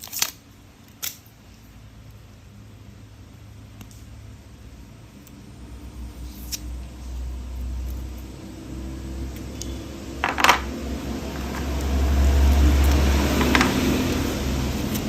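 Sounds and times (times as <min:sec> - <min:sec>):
plastic toy train parts handled: 0:00.0 - 0:01.3.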